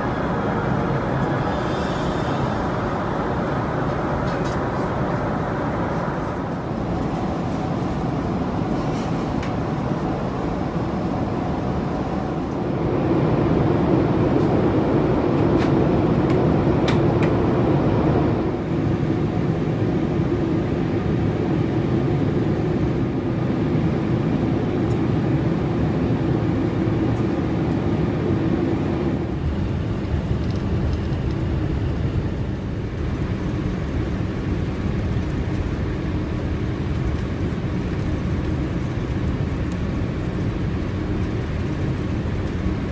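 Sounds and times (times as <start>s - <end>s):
steady drone: 0.0s - 13.0s
airliner cabin rumble: 0.0s - 18.6s, 26.6s - 42.9s.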